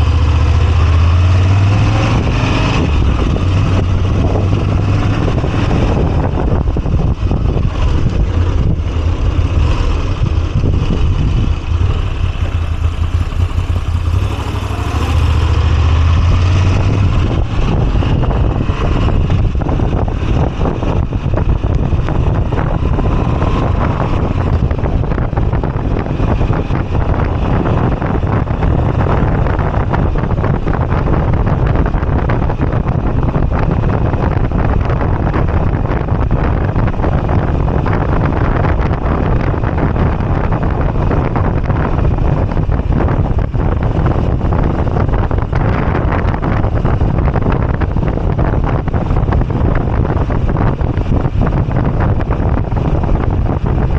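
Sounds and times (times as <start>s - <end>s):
motorcycle engine running: 0.0s - 53.9s
wind buffeting microphone: 0.0s - 53.9s.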